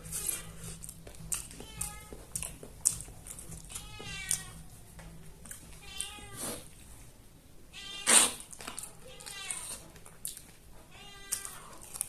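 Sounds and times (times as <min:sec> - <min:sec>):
cat meowing: 0:01.5 - 0:02.4, 0:03.7 - 0:04.7, 0:05.8 - 0:06.7, 0:07.7 - 0:09.8, 0:10.9 - 0:11.8.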